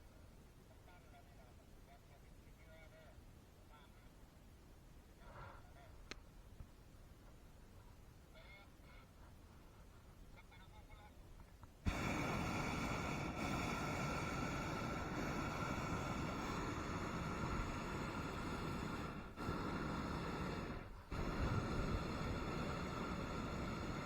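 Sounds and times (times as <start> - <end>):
propane burner roaring: 11.8 - 24.0.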